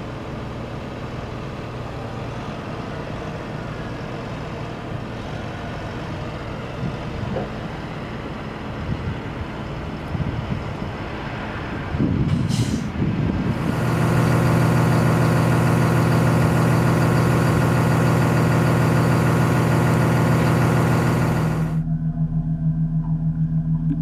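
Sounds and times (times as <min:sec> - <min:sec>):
brief high hiss: 0:12.4 - 0:12.9
low pulsing hum: 0:13.4 - 0:24.0
suction pump humming and hissing: 0:13.5 - 0:21.8.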